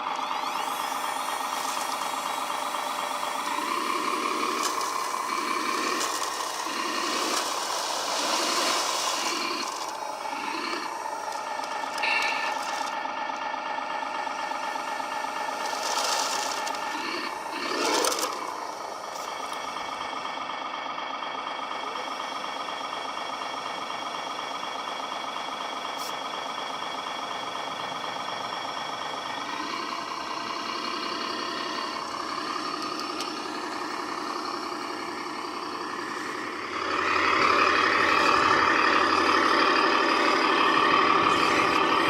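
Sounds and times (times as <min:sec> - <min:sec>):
electric motor whine: 0:00.3 - 0:13.0, 0:14.5 - 0:19.6, 0:36.0 - 0:42.0.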